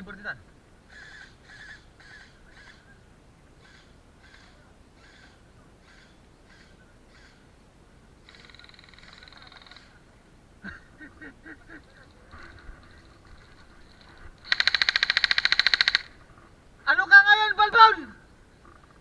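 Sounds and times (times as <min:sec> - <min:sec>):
rapid buzzy bird call: 0:00.8 - 0:03.0, 0:03.6 - 0:07.5, 0:08.2 - 0:10.0, 0:11.0 - 0:16.5
short harsh bird calls: 0:00.8 - 0:03.0, 0:03.6 - 0:07.5.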